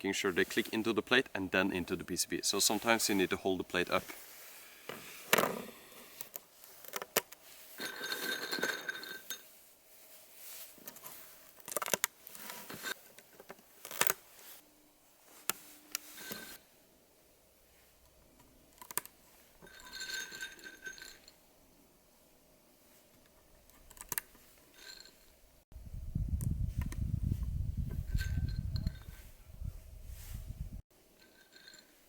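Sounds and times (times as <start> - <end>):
rattling jangle with faint ring: 7.7 - 9.6, 19.4 - 21.4, 27.9 - 29.3, 31.1 - 32.0.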